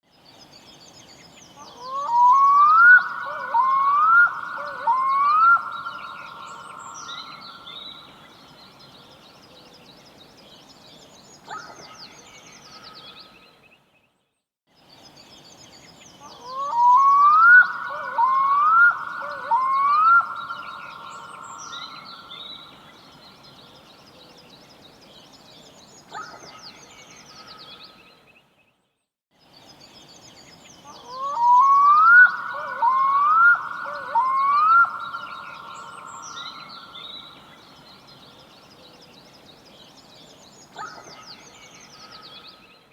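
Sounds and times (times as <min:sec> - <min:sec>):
faint high chirping: 0:01.6 - 0:08.7, 0:16.3 - 0:23.4, 0:30.8 - 0:38.7
loon wailing call: 0:01.8 - 0:07.5, 0:16.5 - 0:22.2, 0:31.1 - 0:37.3.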